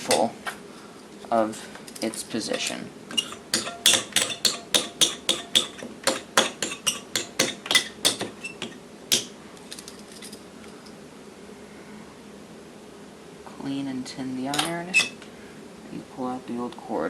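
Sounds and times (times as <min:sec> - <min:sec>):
hand tools tapping on metal: 0:00.0 - 0:00.3, 0:01.9 - 0:09.3.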